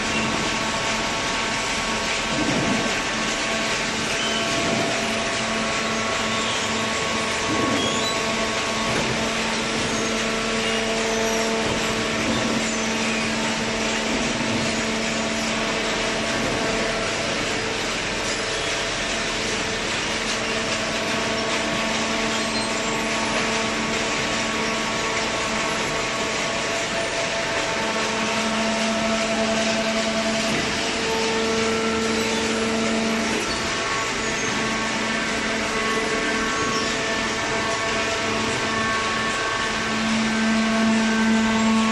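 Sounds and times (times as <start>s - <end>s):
hydraulic motor and pump humming: 0.0s - 41.9s.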